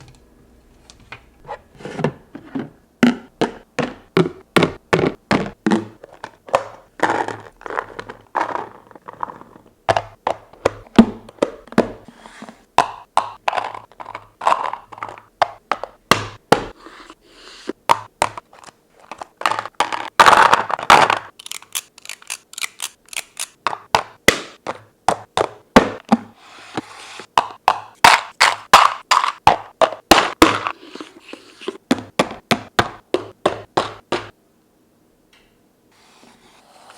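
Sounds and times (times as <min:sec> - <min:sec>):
plastic containers knocking and clattering: 0:01.8 - 0:16.8, 0:17.8 - 0:21.3, 0:23.6 - 0:26.4, 0:27.2 - 0:34.4.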